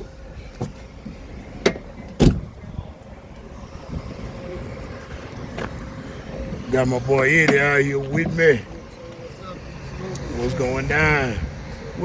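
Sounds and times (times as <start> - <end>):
deep thump: 1.6 - 2.6.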